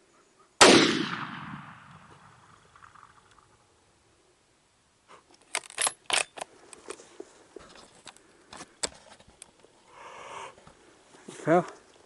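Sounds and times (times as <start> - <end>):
rifle bolt metallic clicks: 5.4 - 6.5.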